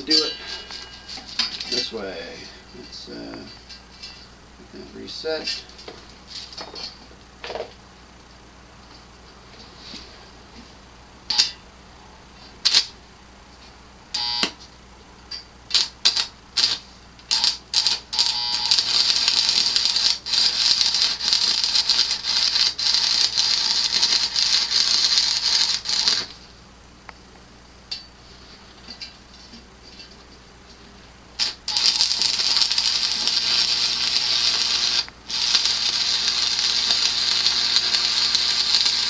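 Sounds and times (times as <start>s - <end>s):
welding arc crackling: 12.6s - 12.9s, 15.7s - 26.4s, 31.4s - 39.0s.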